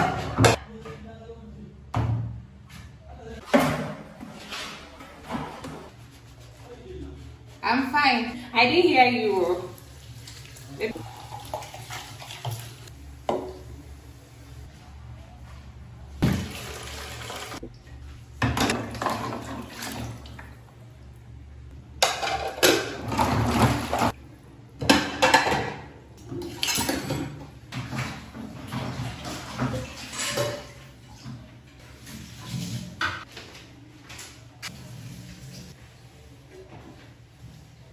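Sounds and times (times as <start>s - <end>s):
water running: 8.1s - 14.7s, 16.2s - 20.9s
dishes and pots clattering: 18.4s - 20.1s, 22.0s - 24.2s, 24.8s - 30.9s.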